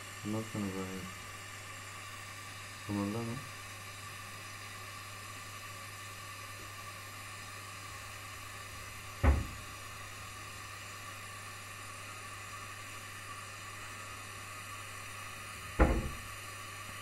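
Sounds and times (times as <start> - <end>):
steady hiss: 0.0 - 17.0
sharp knock: 9.2 - 9.6, 15.8 - 16.2.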